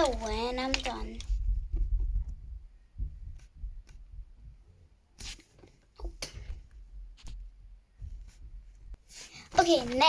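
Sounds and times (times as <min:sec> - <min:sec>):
pencils clicking against each other: 0:00.0 - 0:01.3.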